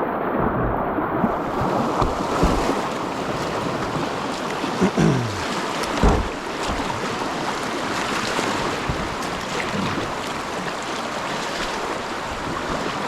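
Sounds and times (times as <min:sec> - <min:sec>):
whitewater rapids rushing: 0:01.4 - 0:13.0
dull thump: 0:05.9 - 0:06.9.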